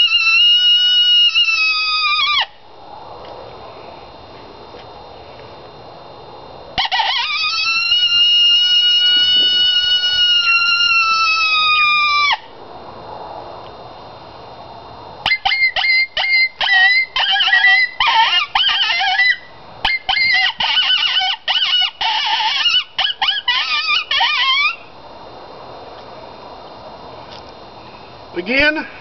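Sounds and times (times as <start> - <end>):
coyote yips and howls: 0.0 - 2.6, 6.8 - 12.5, 15.2 - 24.8
long falling howl: 6.8 - 12.6.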